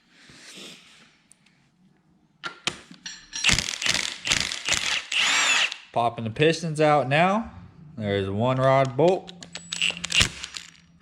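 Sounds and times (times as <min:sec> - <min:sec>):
rapid metallic clicking and rattling: 0:03.4 - 0:05.0, 0:09.3 - 0:10.9.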